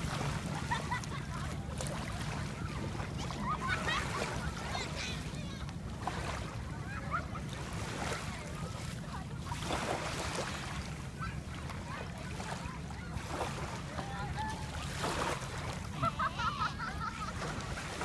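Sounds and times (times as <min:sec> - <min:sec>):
faint distant voices: 0:00.0 - 0:18.0
sea waves washing ashore: 0:00.0 - 0:18.0.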